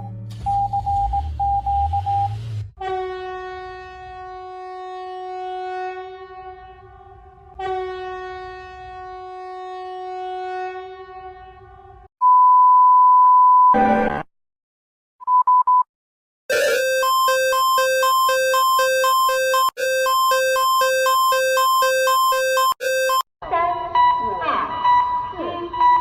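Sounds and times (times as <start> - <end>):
horn-like alarm tone: 16.5 - 23.3.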